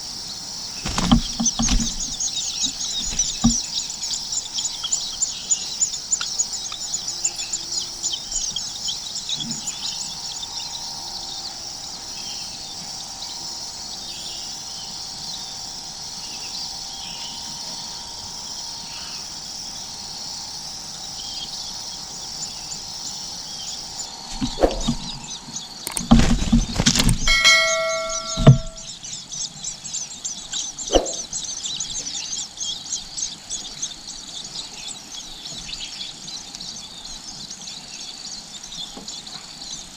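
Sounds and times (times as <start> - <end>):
nestling birds chirping: 0.0 - 39.9
loud knocks: 0.8 - 2.3, 26.0 - 28.8
rustling: 0.8 - 3.8.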